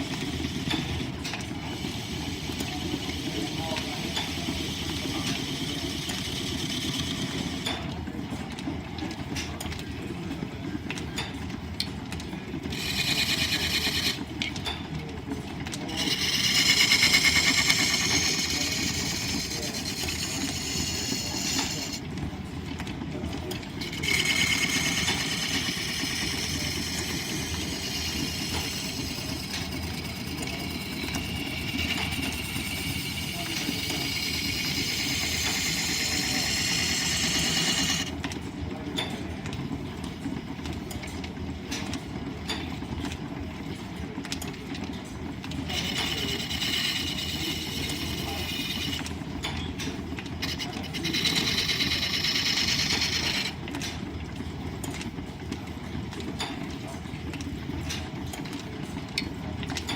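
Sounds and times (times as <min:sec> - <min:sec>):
rumble of shafting and belts: 0:00.0 - 0:59.9
lathe tool scraping wood: 0:01.8 - 0:07.6, 0:12.7 - 0:14.3, 0:15.9 - 0:22.0, 0:23.7 - 0:38.1, 0:45.7 - 0:49.1, 0:50.4 - 0:53.6.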